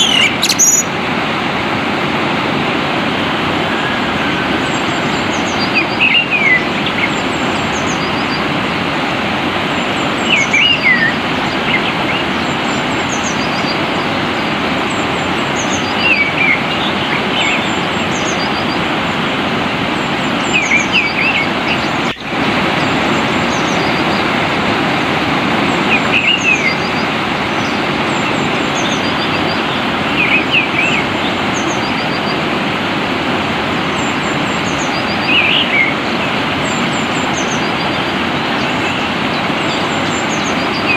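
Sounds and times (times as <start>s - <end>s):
faint high-pitched chirps: 0.0s - 0.9s
songbird chirping: 0.0s - 0.9s
flowing water: 0.0s - 40.9s.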